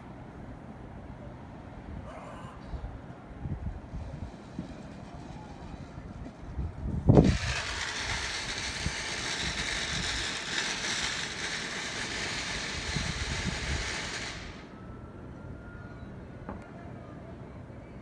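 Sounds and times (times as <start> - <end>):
firework hissing crackle: 6.8 - 14.7.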